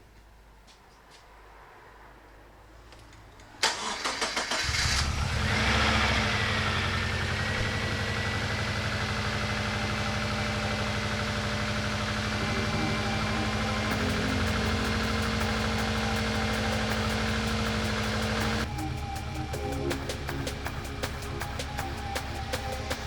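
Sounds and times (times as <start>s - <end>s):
engine cranking on starter: 3.6s - 19.2s
car engine idling: 3.7s - 23.0s
high whine: 5.1s - 23.0s.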